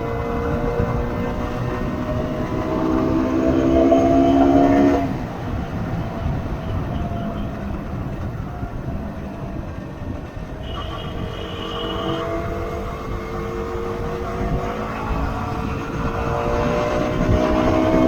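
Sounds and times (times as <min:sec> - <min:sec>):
motorcycle engine rumble: 0:00.0 - 0:18.0
wind noise: 0:00.0 - 0:18.0
higher-pitched horn: 0:10.6 - 0:12.6
multi-tone vehicle horn blast: 0:10.6 - 0:12.9.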